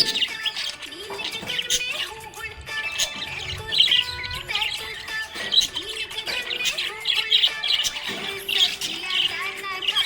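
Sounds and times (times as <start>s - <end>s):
budgies chirping and warbling: 0.0s - 10.0s.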